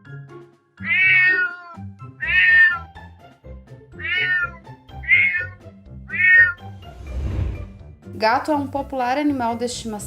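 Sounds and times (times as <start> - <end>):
background music: 0.0 - 10.0
cat meowing: 0.8 - 2.9, 4.0 - 6.6.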